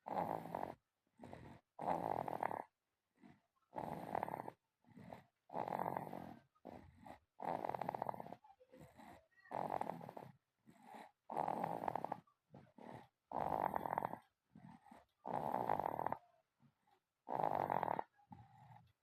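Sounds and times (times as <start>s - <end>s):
child snoring: 0.0s - 16.2s, 17.2s - 19.0s.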